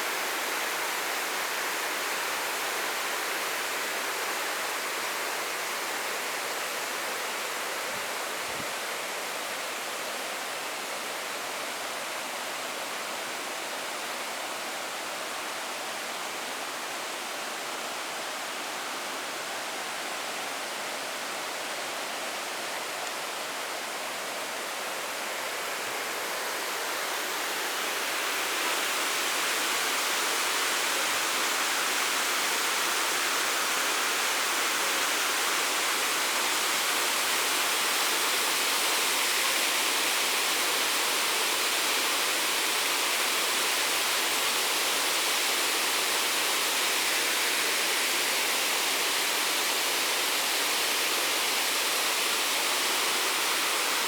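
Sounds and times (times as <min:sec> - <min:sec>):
waterfall roaring: 0:22.4 - 0:54.0.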